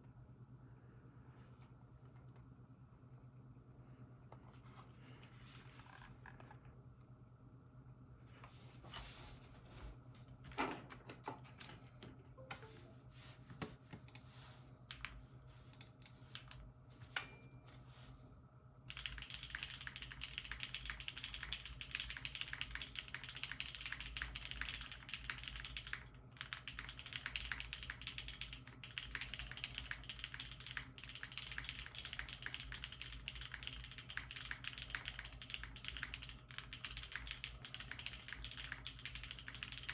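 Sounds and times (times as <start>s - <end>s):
mechanical keyboard typing: 18.9s - 39.9s.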